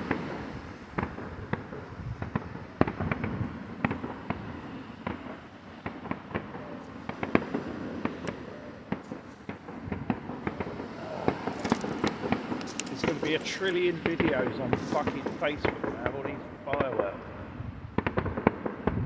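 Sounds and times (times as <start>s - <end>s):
fireworks popping and crackling: 0.0s - 19.0s.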